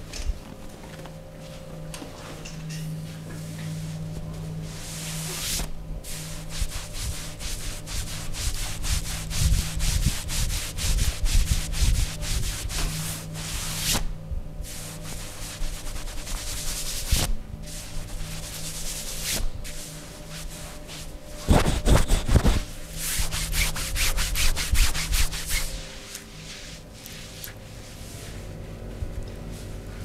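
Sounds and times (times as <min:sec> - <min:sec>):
hands rubbing over skin: 0:14.9 - 0:17.3, 0:18.2 - 0:28.4.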